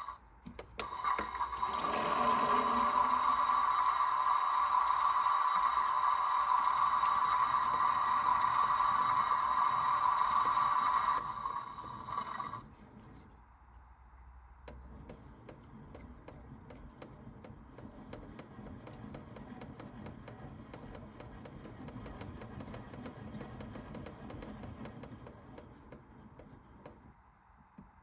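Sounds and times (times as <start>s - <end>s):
loud steady whirring: 0.0s - 12.7s.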